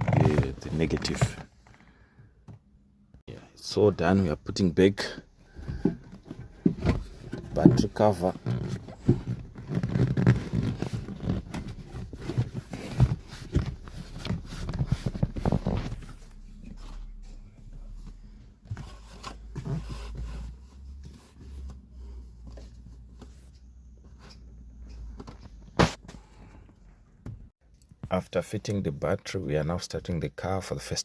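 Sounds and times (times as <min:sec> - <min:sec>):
plastic parts scraping and knocking: 0:05.5 - 0:16.8.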